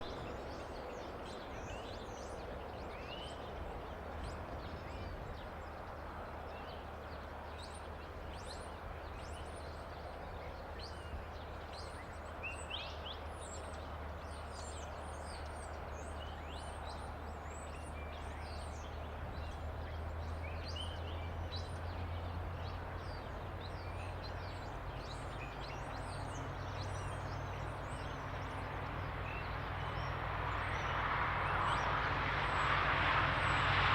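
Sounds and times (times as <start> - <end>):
small birds chirping: 0.0 - 32.7.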